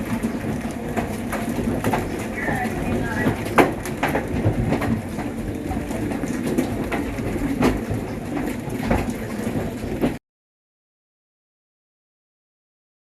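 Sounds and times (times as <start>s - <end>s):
hail striking: 0.0s - 10.2s
heavy rain: 0.0s - 10.2s.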